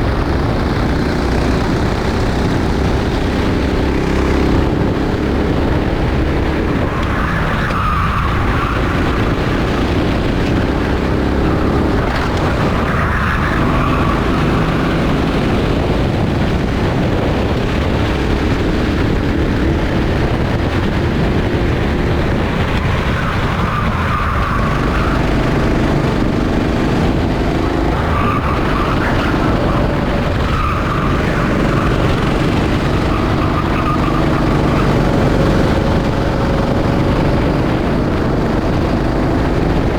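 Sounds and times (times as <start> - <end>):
go-kart engine racing: 0.0 - 39.9
tyres squealing: 22.3 - 39.3.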